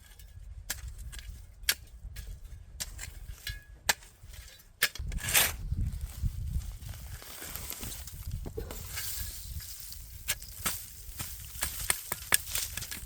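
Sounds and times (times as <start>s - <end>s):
rustling hiss and low rumble: 0.4s - 13.0s
wood fire crackling: 6.4s - 13.0s
burning wood popping: 6.5s - 13.0s.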